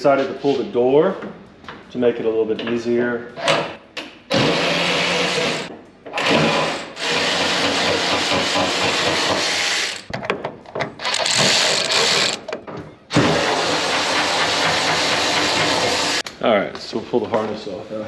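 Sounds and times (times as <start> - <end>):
power tool running: 4.3 - 10.1, 11.0 - 12.4, 13.1 - 16.2.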